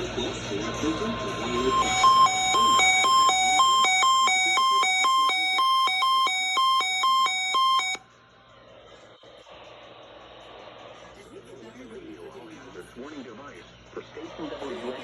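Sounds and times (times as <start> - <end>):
two-tone electronic alarm beep: 1.5 - 8.0
faint radio hiss: 8.3 - 15.0.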